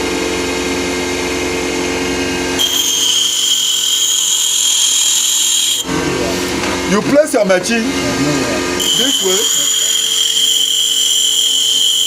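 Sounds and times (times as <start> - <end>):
blade grinding whine: 1.8 - 12.0
sharpening machine motor hum: 2.0 - 7.0, 7.8 - 12.0.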